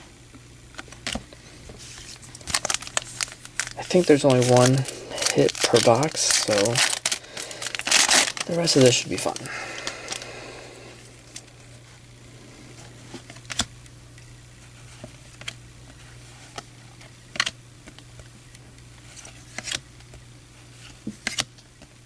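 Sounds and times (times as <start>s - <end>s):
steady low hum: 0.0s - 22.0s
cards snapping while flipped: 20.9s - 21.9s.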